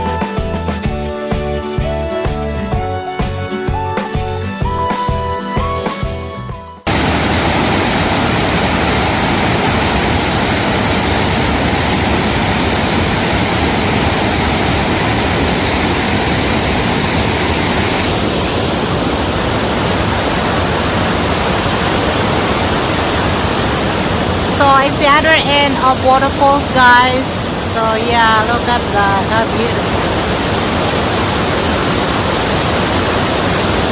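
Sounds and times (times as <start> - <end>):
background music: 0.0 - 6.9, 24.5 - 29.8
waterfall rushing: 6.9 - 33.9.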